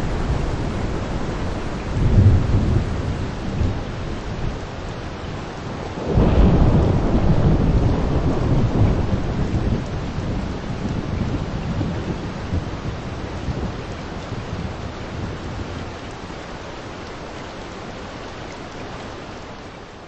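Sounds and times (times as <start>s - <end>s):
low thunder rumbling: 0.0s - 16.0s
rain falling steadily: 0.0s - 20.0s.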